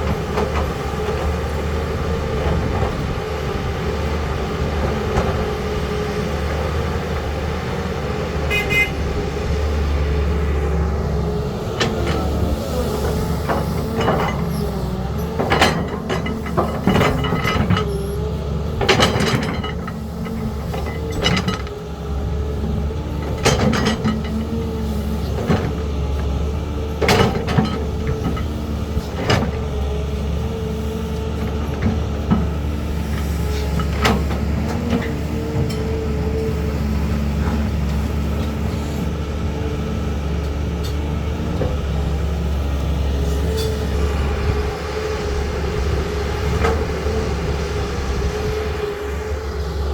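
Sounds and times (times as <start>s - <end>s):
excavator diesel engine running: 0.0s - 49.9s
metallic clanks and knocks: 11.6s - 18.0s, 18.7s - 21.8s, 23.2s - 24.6s, 26.9s - 29.7s, 31.4s - 36.3s.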